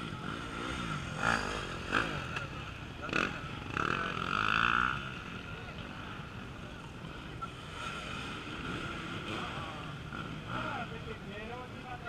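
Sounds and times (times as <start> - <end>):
motorcycle engines revving: 0.0 - 12.0.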